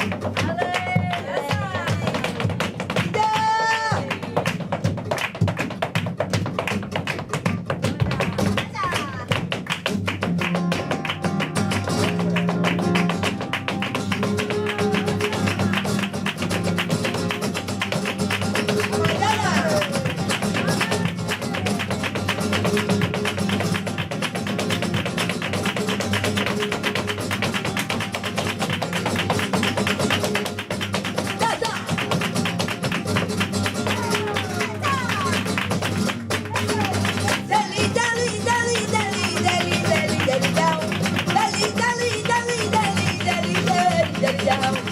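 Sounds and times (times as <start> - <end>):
dancer's shoes tapping on floor: 0.0 - 44.9
flamenco guitar: 0.0 - 44.9.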